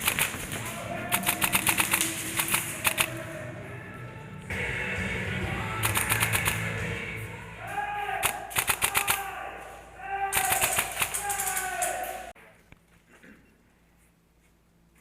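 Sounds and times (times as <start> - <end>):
airsoft rifle full-auto bursts: 0.0 - 0.5, 1.1 - 3.1, 5.8 - 6.7, 8.2 - 9.2, 10.4 - 11.5.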